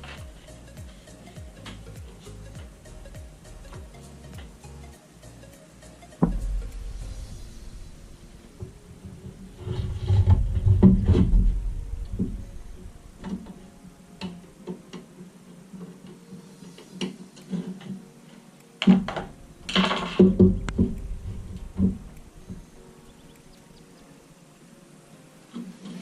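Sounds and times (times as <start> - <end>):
low rumble: 6.2 - 13.7, 19.4 - 23.3.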